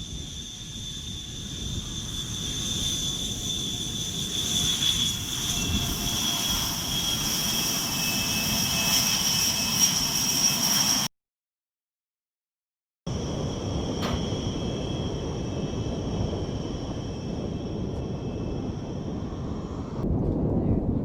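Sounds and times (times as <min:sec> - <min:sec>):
jet engines running: 0:00.0 - 0:11.1, 0:13.1 - 0:20.1.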